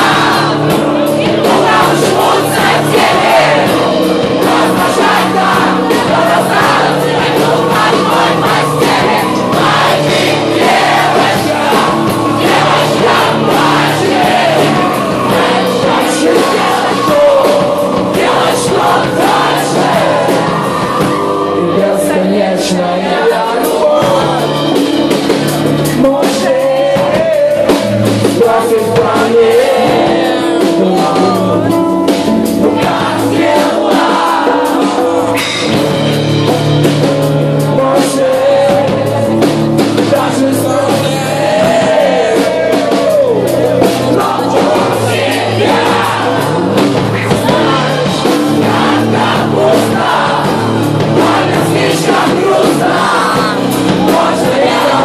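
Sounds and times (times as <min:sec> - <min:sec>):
drum hits: 0:00.0 - 0:21.4, 0:23.8 - 0:55.0
band playing acoustic live: 0:00.0 - 0:55.0
person singing: 0:25.6 - 0:35.4, 0:51.2 - 0:55.0.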